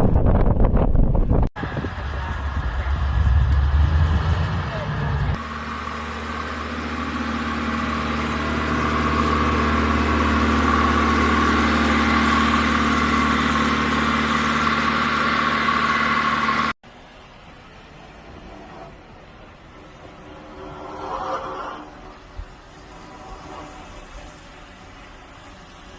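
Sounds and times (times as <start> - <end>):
engine running: 0.0 - 25.9.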